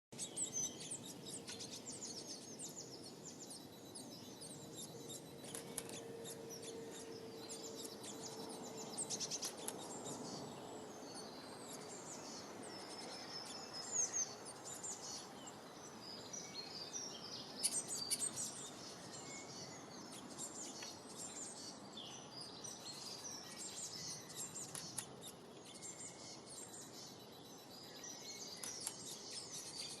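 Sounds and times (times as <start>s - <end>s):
small birds chirping: 0.1s - 30.0s.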